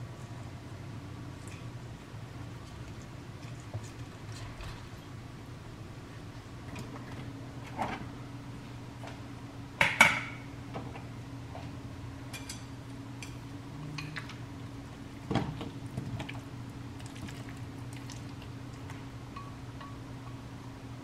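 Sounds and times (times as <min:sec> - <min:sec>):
steady low hum: 0:00.0 - 0:21.0
dishes and utensils clinking: 0:12.3 - 0:13.4.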